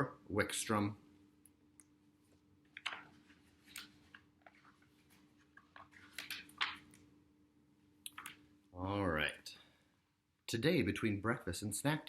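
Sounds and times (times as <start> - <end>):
book pages rustling: 2.2 - 7.1.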